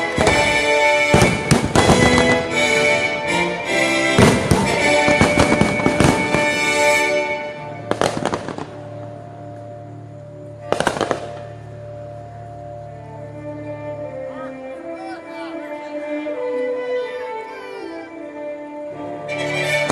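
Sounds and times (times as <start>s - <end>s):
loud music: 0.0s - 8.7s
fireworks bursting and crackling: 0.0s - 9.6s, 10.6s - 12.0s.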